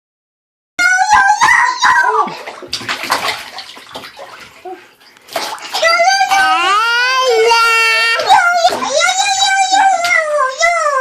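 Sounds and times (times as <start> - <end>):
bath water splashing: 2.2 - 9.3
child squealing: 6.2 - 8.5.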